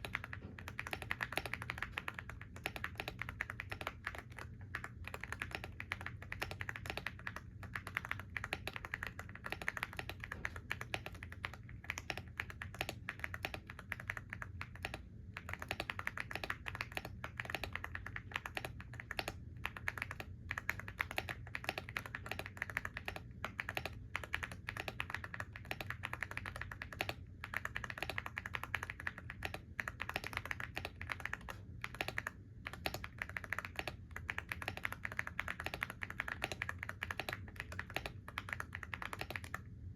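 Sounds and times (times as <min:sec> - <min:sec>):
faint low hum: 0:00.0 - 0:39.9
fast typing on keyboard: 0:00.0 - 0:39.9.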